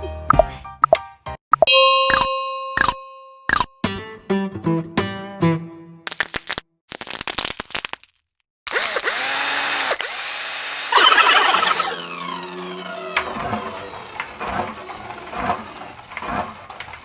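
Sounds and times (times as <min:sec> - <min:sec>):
long noisy whir: 0:08.7 - 0:17.0.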